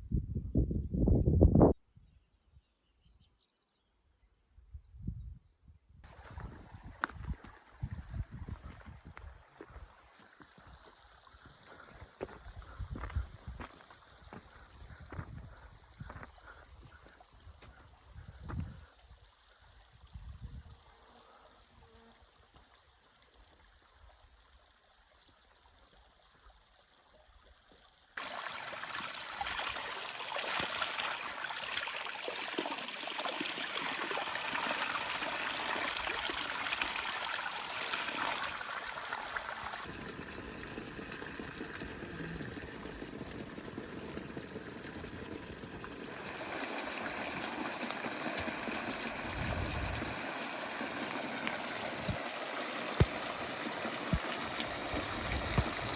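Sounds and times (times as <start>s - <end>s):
spring water trickling: 6.0s - 14.8s, 27.9s - 55.9s.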